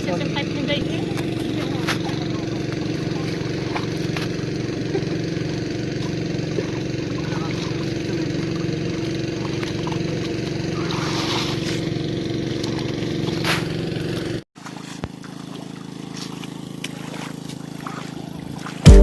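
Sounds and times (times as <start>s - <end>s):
small engine idling: 0.0s - 19.0s.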